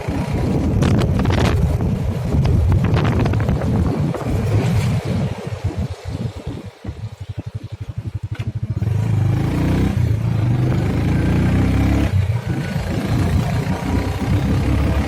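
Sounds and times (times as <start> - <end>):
motorcycle engine chugging: 5.5 - 15.0.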